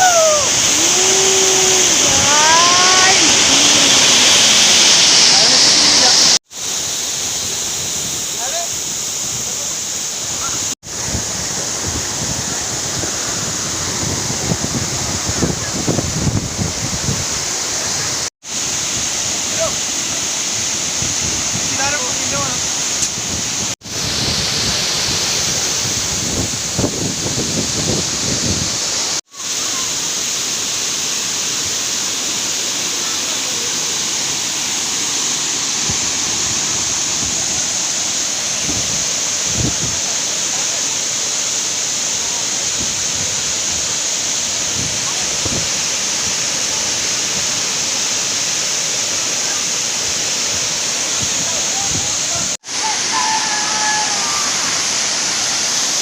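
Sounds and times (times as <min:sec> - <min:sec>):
waterfall rushing: 0:00.0 - 0:56.0
wind buffeting microphone: 0:10.8 - 0:18.3, 0:20.9 - 0:29.0, 0:44.6 - 0:45.9.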